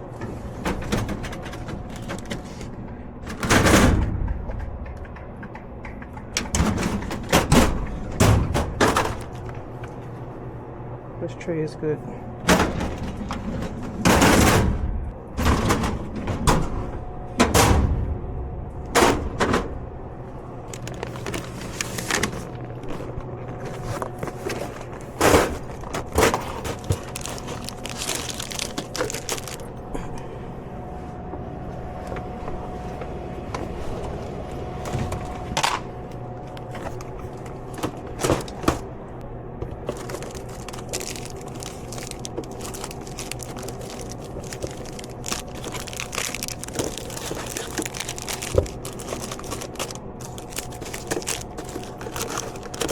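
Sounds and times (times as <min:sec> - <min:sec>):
machine hum: 0:00.0 - 0:52.9
snack packages crinkling: 0:20.6 - 0:29.8, 0:39.7 - 0:52.9.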